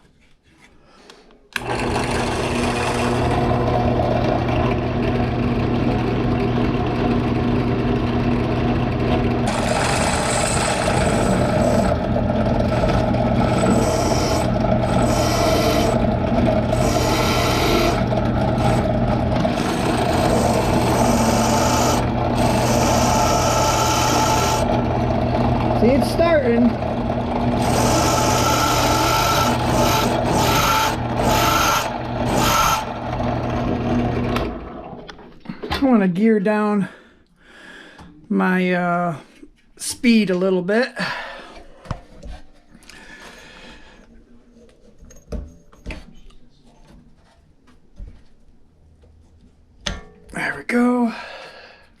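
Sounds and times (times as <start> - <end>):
drill bit rasping into metal: 1.6 - 3.7, 9.4 - 25.2, 27.4 - 33.1
drill press motor humming: 1.6 - 35.1.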